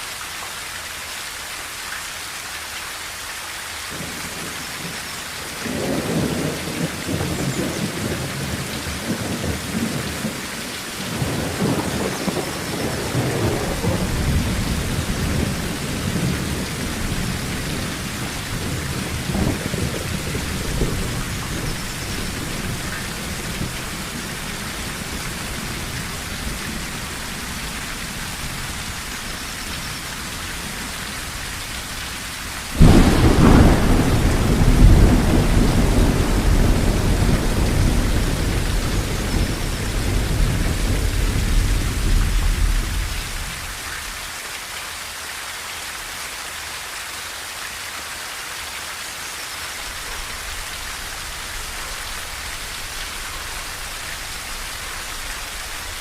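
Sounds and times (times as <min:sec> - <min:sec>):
rain on a tin roof: 0:00.0 - 0:56.0
thunder rolling: 0:11.1 - 0:29.0, 0:32.6 - 0:43.6.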